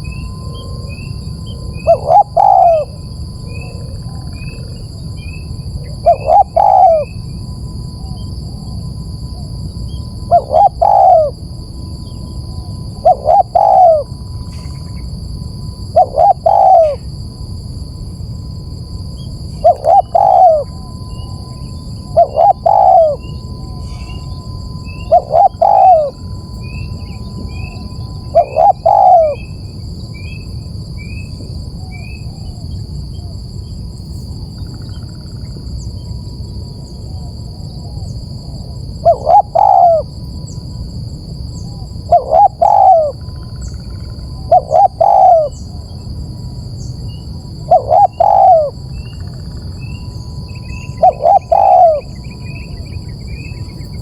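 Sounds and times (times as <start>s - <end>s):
dove cooing: 0.0s - 7.3s, 10.2s - 11.5s, 12.2s - 15.1s, 15.7s - 17.1s, 19.5s - 30.4s, 39.0s - 40.1s, 41.6s - 46.0s, 47.4s - 54.0s
faint steady whine and hiss: 0.0s - 54.0s.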